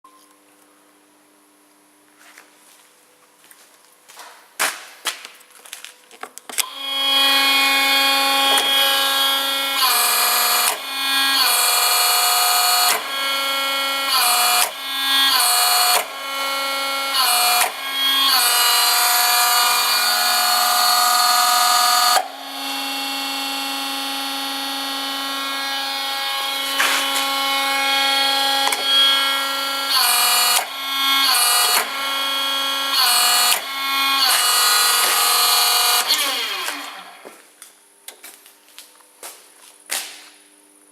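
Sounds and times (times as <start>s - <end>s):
pneumatic punch press whine: 6.6s - 37.4s.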